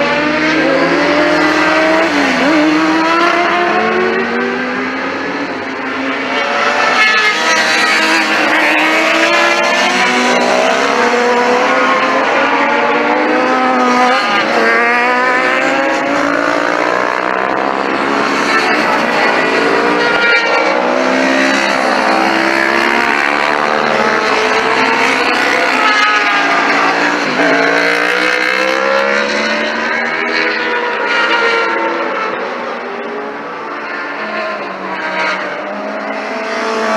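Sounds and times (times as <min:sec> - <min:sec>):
motorcycles racing: 0:00.0 - 0:36.9.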